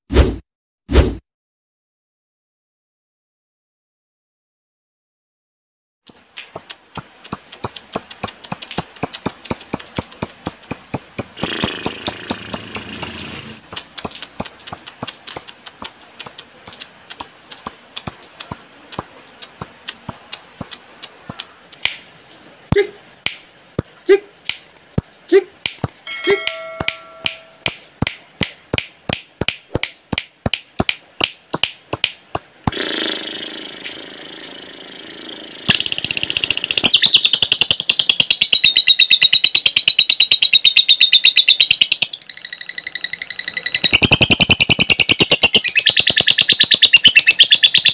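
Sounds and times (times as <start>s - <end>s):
lovebird clicking chirps: 6.1s - 22.0s, 22.7s - 32.7s, 35.7s - 47.9s.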